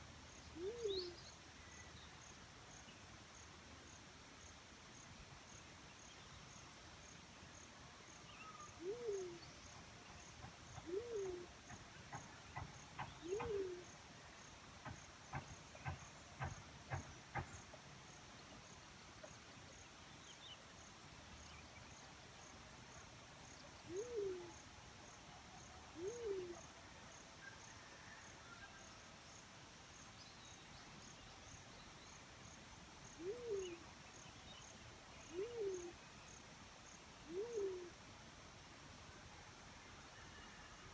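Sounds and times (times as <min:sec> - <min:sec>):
dove hooting: 0:00.6 - 0:01.2, 0:08.8 - 0:09.4, 0:10.8 - 0:11.7, 0:13.0 - 0:13.9, 0:23.9 - 0:24.6, 0:25.9 - 0:26.7, 0:33.2 - 0:33.9, 0:35.3 - 0:36.0, 0:37.2 - 0:38.0.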